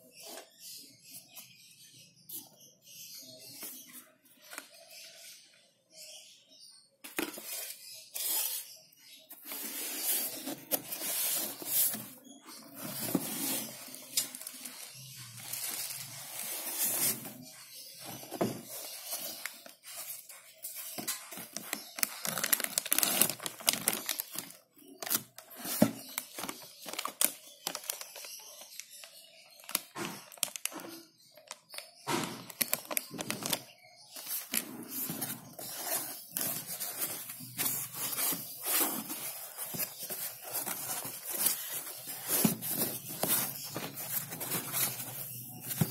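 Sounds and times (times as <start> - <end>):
packaging crinkling and tearing: 21.6 - 28.2.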